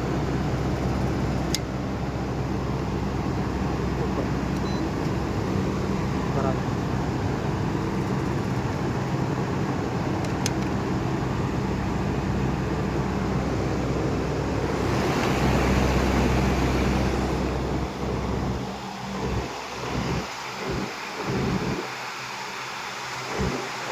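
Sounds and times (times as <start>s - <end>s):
air conditioning unit humming: 0.0s - 22.1s.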